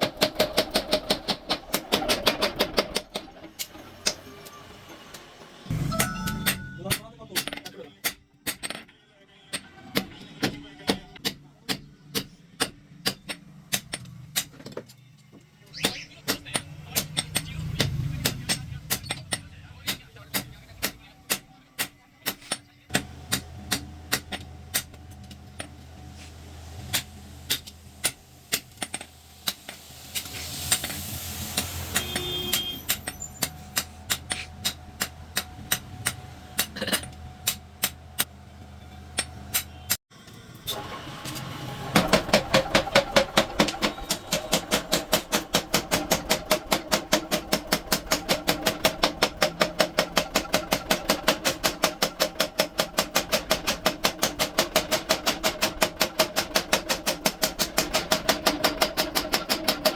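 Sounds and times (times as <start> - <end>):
hammer striking steel: 5.7 - 8.8, 31.6 - 38.3.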